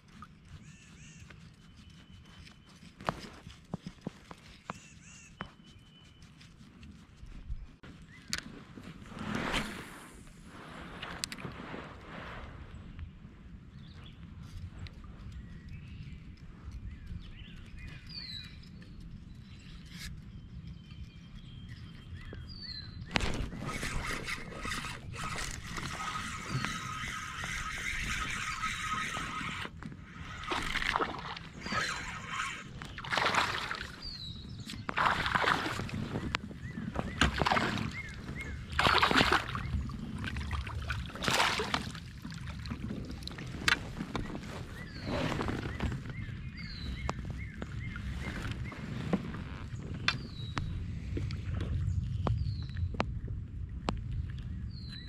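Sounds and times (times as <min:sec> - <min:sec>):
birds chirping: 0:07.4 - 0:09.0, 0:12.7 - 0:53.0
paddle splashing in water: 0:23.1 - 0:46.2
low outdoor rumble: 0:29.7 - 0:55.0.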